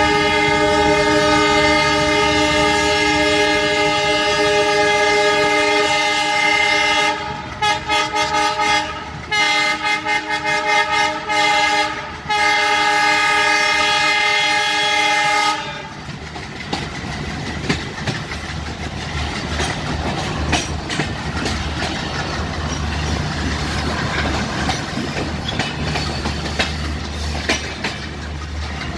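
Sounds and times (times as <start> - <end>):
locomotive horn honking: 0.0 - 16.0
locomotive engine rumbling: 0.0 - 28.9
train wheels clattering: 12.0 - 28.9.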